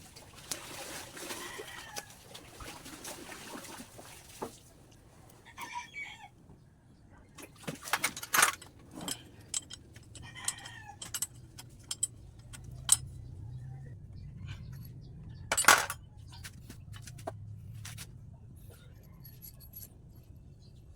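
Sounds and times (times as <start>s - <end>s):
metal tools clinking and knocking: 7.8s - 13.2s, 14.6s - 16.4s, 19.0s - 20.3s.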